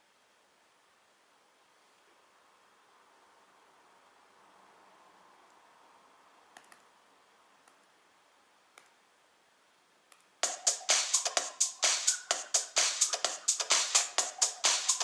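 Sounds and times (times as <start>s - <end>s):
low hiss: 0.0s - 15.0s
techno drum-machine beat: 10.4s - 15.0s.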